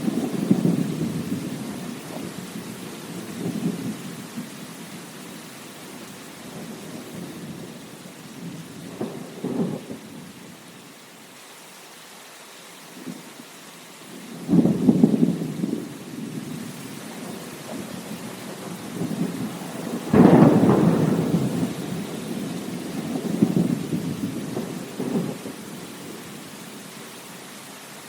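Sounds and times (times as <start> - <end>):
rolling thunder: 0.0 - 4.5, 6.5 - 10.3, 14.3 - 26.4
steady rain: 0.0 - 28.0.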